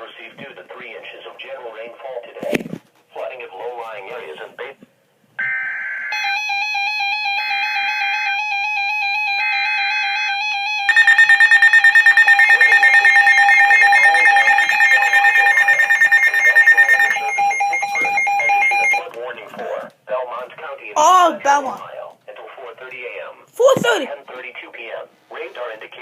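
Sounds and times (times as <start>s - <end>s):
warbling alarm tone: 5.4s - 19.0s
rapidly pulsing alert tone: 10.9s - 19.0s
screeching digital data bursts: 10.9s - 19.0s.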